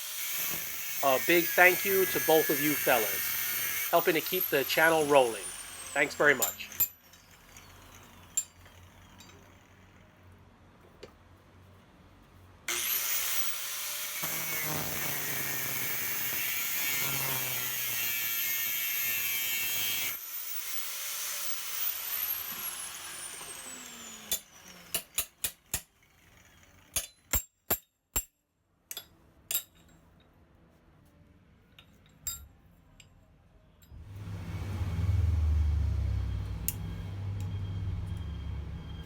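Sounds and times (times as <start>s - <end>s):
power tool whining: 0.0s - 10.1s, 12.7s - 25.4s, 33.9s - 39.0s.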